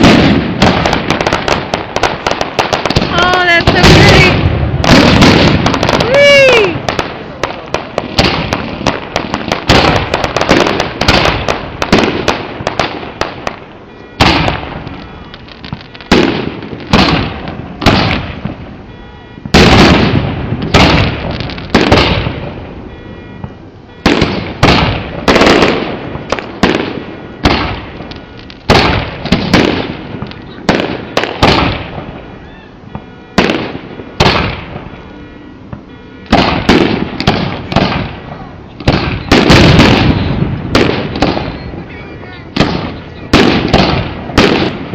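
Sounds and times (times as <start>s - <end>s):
fireworks booming with echo: 0.0s - 44.9s.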